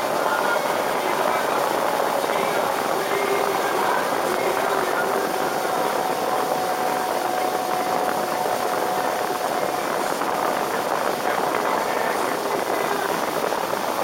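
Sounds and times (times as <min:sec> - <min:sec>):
boat motor running: 0:00.0 - 0:14.0
faint whine: 0:00.0 - 0:14.0.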